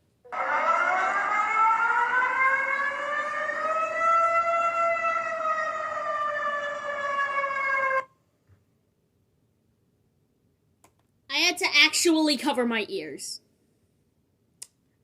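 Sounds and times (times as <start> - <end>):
wailing emergency siren: 0.3 - 8.1.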